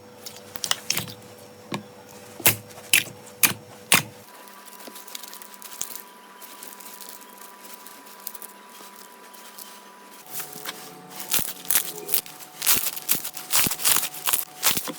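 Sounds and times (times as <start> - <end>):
slime crackling and popping: 11.3 - 14.9.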